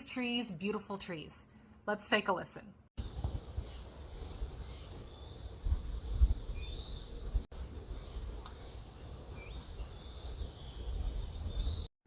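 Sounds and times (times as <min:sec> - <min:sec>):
brown creeper song: 0:03.0 - 0:11.9.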